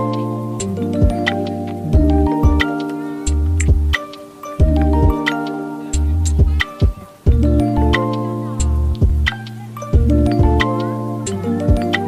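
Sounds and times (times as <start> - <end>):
held chord tones: 0.0 - 12.0
beat of deep thuds and clicks: 3.3 - 4.0, 6.2 - 8.0, 8.9 - 9.4.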